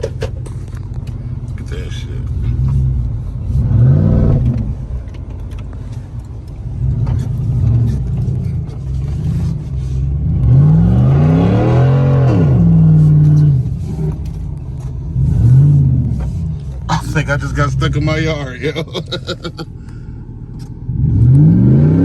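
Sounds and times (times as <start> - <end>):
pickup truck engine revving: 10.0 - 14.3, 15.1 - 19.6, 20.8 - 22.0.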